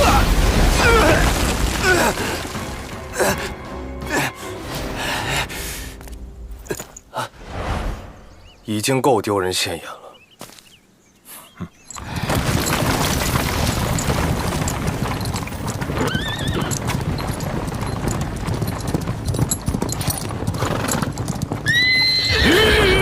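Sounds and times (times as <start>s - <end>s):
horse hoofbeats clattering: 11.8s - 22.8s
horse whinnying: 15.8s - 17.3s, 20.6s - 23.0s.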